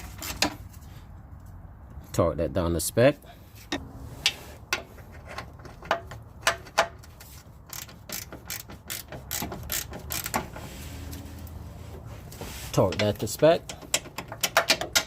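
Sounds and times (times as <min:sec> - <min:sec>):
ratchet wrench clicking: 0:06.4 - 0:10.6.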